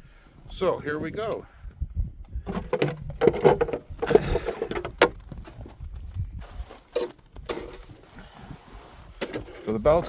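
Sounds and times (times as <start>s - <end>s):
tools and parts knocking and scraping: 2.4s - 5.7s, 6.7s - 8.1s, 9.1s - 9.8s.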